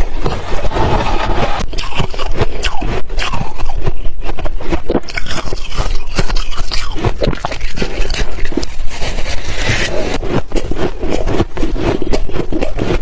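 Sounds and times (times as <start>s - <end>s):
chewing crunchy ice: 1.6s - 13.0s.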